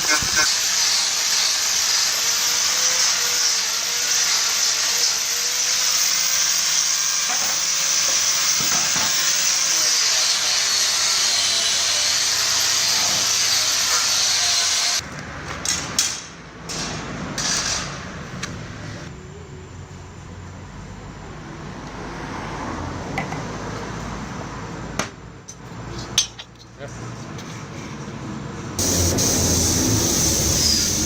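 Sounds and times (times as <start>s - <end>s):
power tool high-pitched whirring: 0.0s - 15.0s, 28.8s - 31.0s
low rumble: 28.8s - 31.0s.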